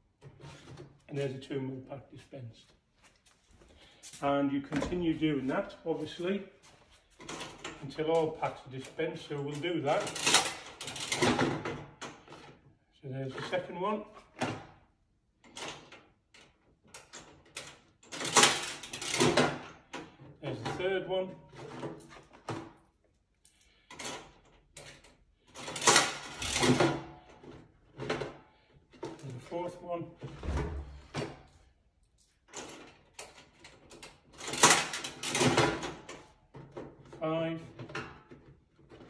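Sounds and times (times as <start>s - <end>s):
vending machine clicks and clunks: 9.8s - 12.4s, 17.0s - 19.8s, 32.5s - 36.3s
vending machine dispensing clatter: 17.4s - 19.7s, 25.6s - 27.2s, 33.6s - 36.2s.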